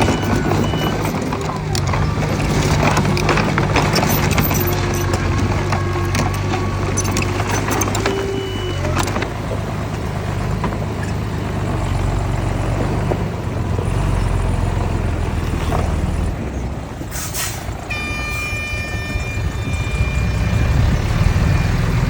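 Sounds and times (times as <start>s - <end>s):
diesel machinery rumbling: 0.0s - 22.0s
short hiss: 17.1s - 17.7s.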